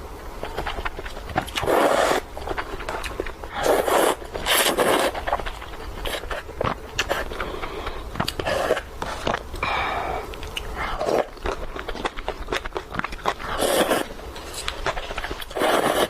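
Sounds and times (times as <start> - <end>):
noodle slurps: 1.6 - 2.2, 3.5 - 5.4, 13.3 - 14.1, 15.2 - 16.0
wet chewing: 10.3 - 16.0.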